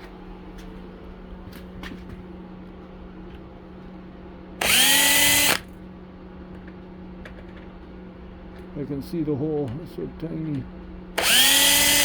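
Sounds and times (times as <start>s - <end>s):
power drill spinning: 4.6s - 5.6s, 11.2s - 12.0s.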